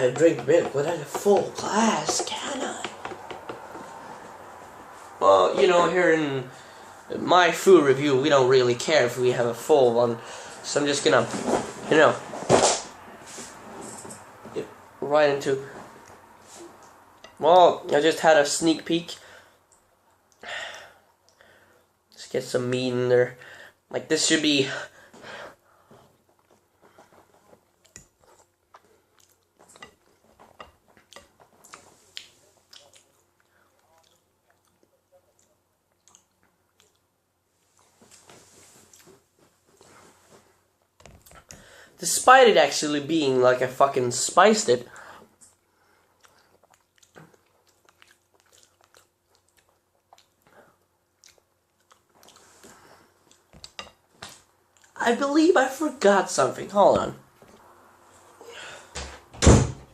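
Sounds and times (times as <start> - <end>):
person chewing meat: 26.1 - 37.9, 45.5 - 53.8.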